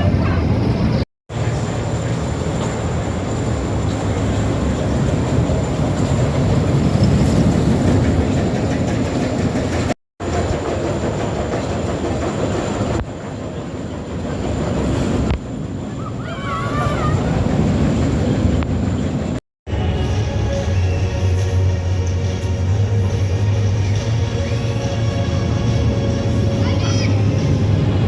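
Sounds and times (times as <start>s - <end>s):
roller coaster wheels rumbling on rail: 0.0s - 28.0s.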